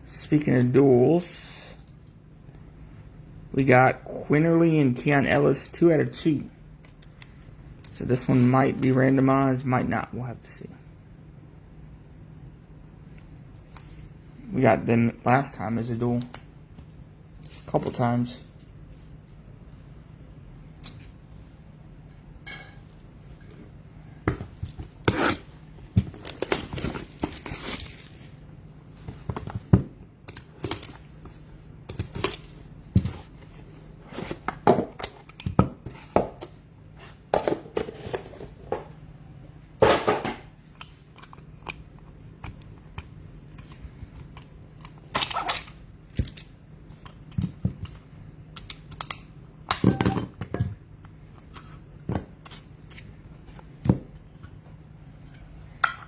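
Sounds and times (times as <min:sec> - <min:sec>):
foil wrappers tearing and crinkling: 0:26.2 - 0:28.4.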